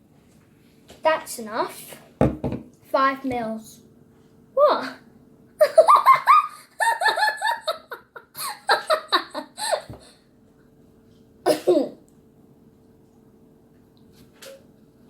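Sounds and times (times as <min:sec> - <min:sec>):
child giggling: 0:05.6 - 0:10.0, 0:11.5 - 0:12.0.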